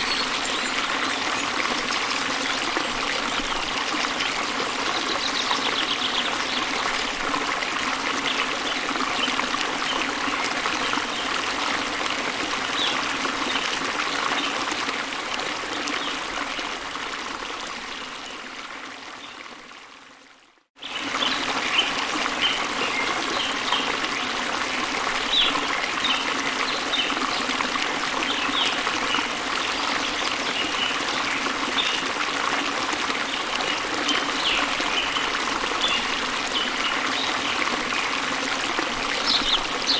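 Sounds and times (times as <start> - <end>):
high bird chirps: 0.0 - 2.6
waterfall running: 0.0 - 14.2, 21.8 - 39.9.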